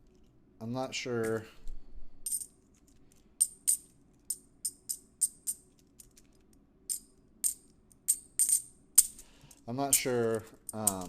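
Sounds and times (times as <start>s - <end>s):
coins clinking: 2.2s - 11.0s.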